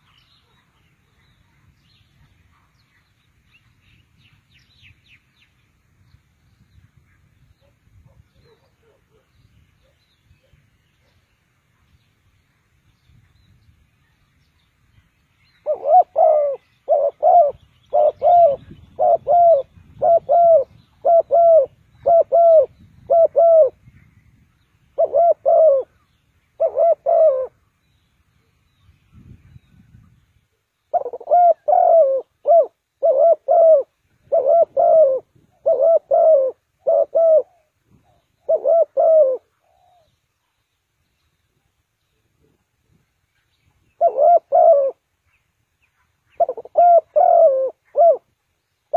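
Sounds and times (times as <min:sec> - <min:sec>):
dove cooing: 0:15.6 - 0:23.8, 0:25.0 - 0:27.6, 0:30.9 - 0:40.1, 0:43.9 - 0:45.0, 0:46.4 - 0:48.3.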